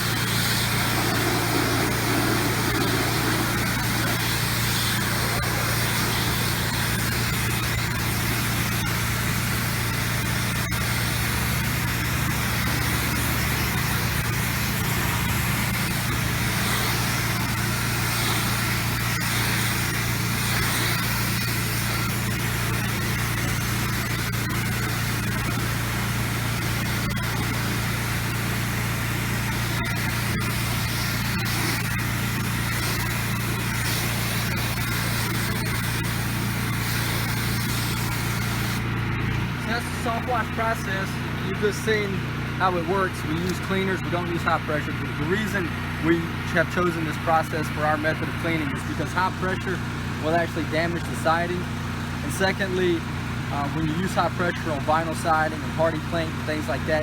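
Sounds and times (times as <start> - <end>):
water spray hissing on siding: 0.0 - 38.8
pressure washer engine humming: 0.0 - 57.0.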